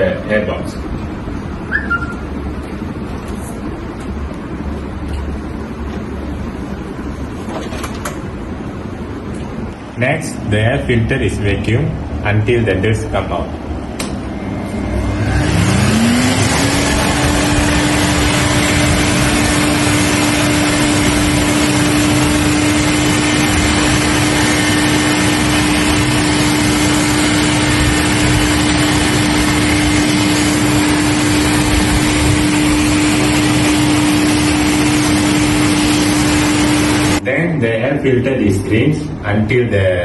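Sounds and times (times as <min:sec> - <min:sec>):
vacuum cleaner motor whine: 0:14.2 - 0:37.2.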